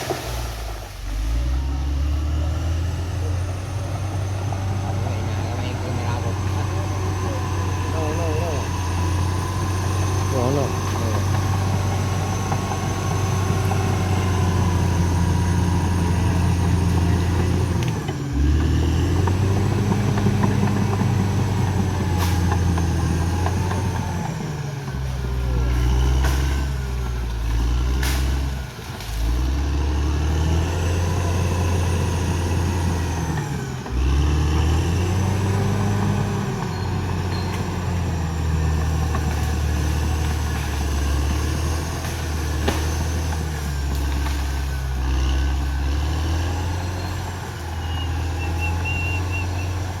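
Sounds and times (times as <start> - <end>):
bulldozer diesel engine under load: 0.0 - 50.0.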